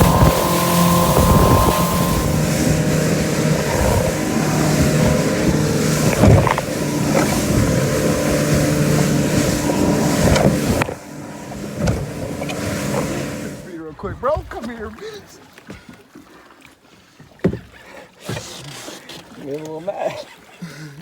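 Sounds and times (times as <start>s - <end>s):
motorboat engine running: 0.0s - 13.8s
wind and water rushing: 0.0s - 15.1s.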